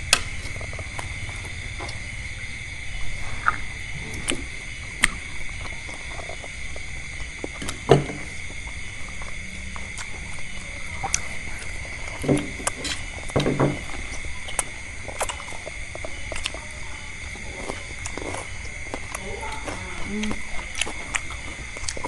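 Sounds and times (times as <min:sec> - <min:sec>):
steady high-pitched hum: 0:00.0 - 0:22.0
chewing clicks and wet smacks: 0:08.4 - 0:10.4, 0:17.7 - 0:22.0.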